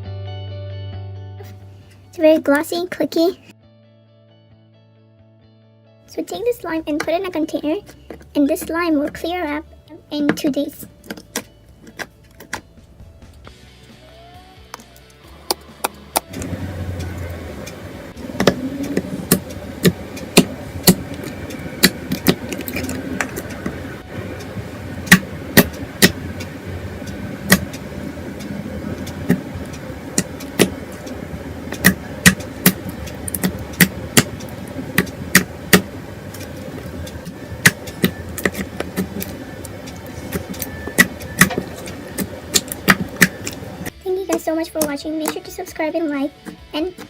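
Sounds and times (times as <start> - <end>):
steady low hum: 12.8 - 47.0.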